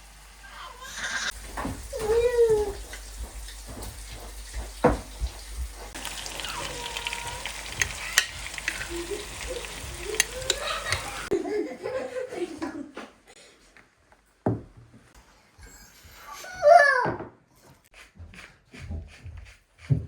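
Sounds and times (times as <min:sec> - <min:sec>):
food sizzling in a pan: 0:00.0 - 0:11.3
utensil clicking against pan: 0:07.0 - 0:11.3.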